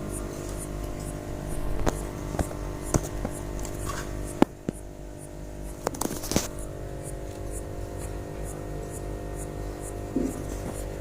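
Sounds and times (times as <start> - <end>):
aquarium pump humming: 0.0 - 11.0.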